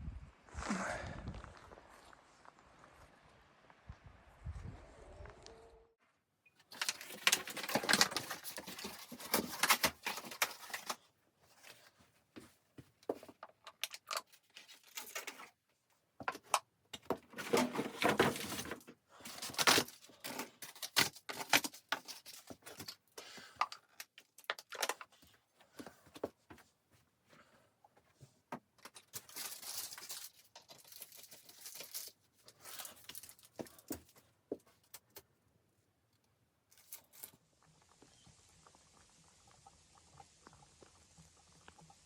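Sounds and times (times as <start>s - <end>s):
rustling and crinkling: 6.6s - 35.4s.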